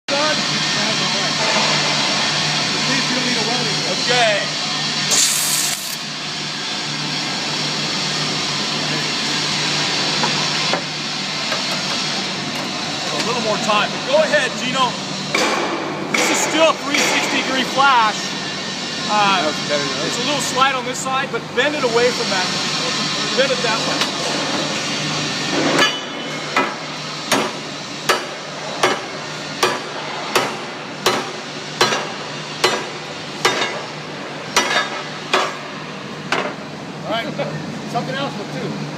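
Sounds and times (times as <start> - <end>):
machinery hiss and hum: 0.1 - 38.9
hammer striking steel stud: 27.3 - 33.8.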